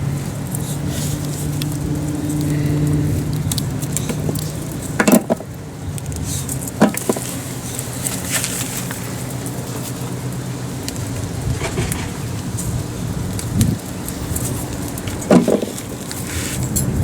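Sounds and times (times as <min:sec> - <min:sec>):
light rain pattering: 0:00.0 - 0:17.0
steady low hum: 0:00.0 - 0:17.0.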